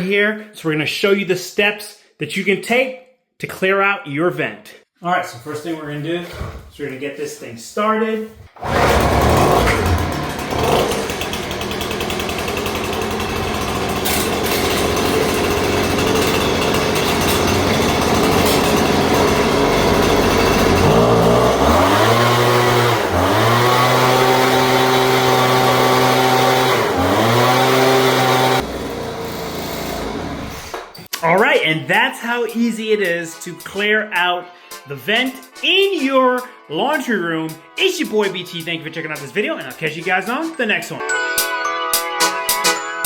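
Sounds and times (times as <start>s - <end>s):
leaf blower engine revving: 8.6s - 30.9s.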